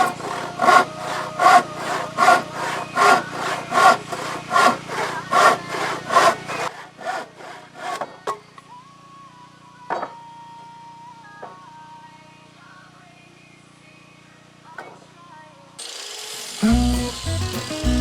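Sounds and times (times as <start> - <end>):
hand saw cutting wood: 0.0 - 8.2, 15.8 - 18.0.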